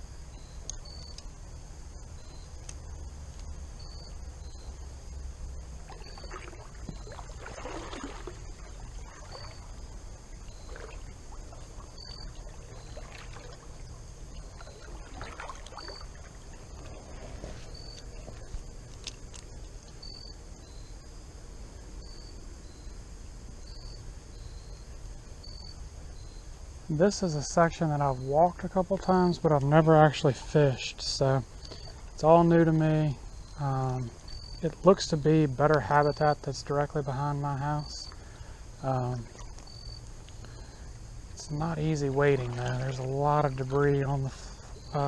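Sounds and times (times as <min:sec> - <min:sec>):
high insect chirps: 0:00.0 - 0:45.0
rumble of moving water: 0:00.0 - 0:45.0
water sloshing from wading: 0:02.1 - 0:20.3, 0:27.8 - 0:32.6, 0:38.1 - 0:45.0.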